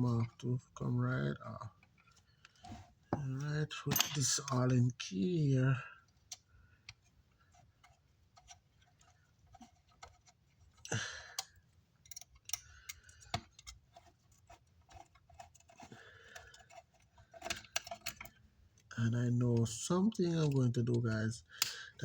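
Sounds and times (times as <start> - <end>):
small metal parts clicking: 10.8 - 14.1, 14.9 - 19.0, 19.6 - 22.0.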